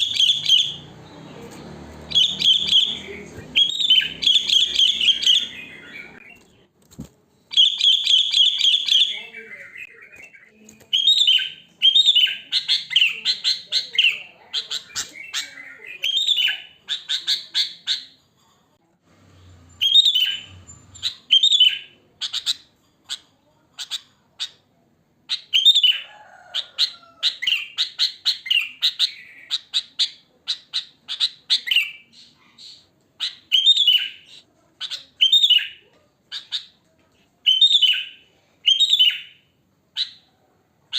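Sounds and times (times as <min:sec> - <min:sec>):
bulbul calling: 0:00.0 - 0:00.9, 0:02.1 - 0:06.4.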